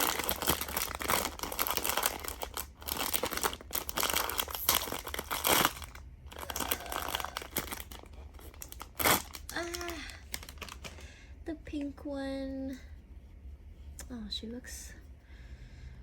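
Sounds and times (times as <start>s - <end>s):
crinkly wrapping crumpled and torn: 0.0s - 11.1s.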